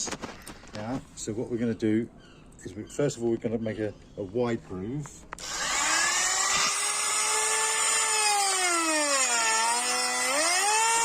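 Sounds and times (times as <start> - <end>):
electric router cutting wood: 5.4 - 11.0.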